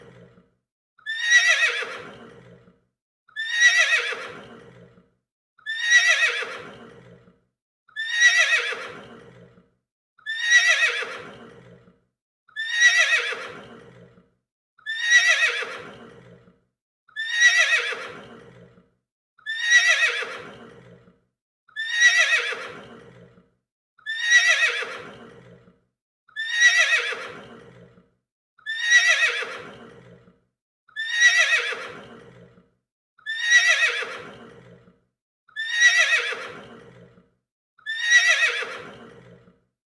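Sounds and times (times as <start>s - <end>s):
horse neighing: 1.1s - 2.7s, 3.4s - 4.9s, 5.7s - 7.3s, 8.0s - 9.5s, 10.3s - 11.8s, 12.6s - 14.1s, 14.9s - 16.4s, 17.2s - 18.7s, 19.5s - 21.0s, 21.8s - 23.3s, 24.1s - 25.6s, 26.4s - 27.9s, 28.7s - 30.2s, 31.0s - 32.5s, 33.3s - 34.8s, 35.6s - 37.0s, 37.9s - 39.4s.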